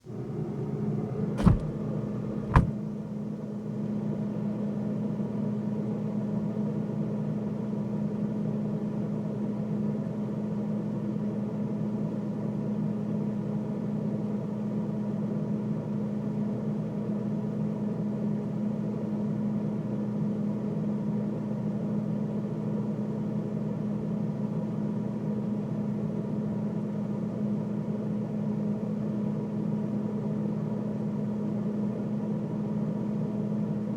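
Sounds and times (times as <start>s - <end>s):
freezer humming: 0.0s - 3.0s
sharp knocks: 1.4s - 1.8s, 2.4s - 2.8s.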